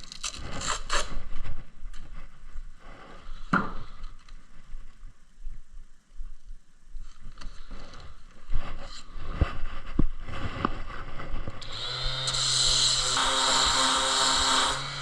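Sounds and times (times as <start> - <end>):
woodworking power tool running: 11.6 - 15.0.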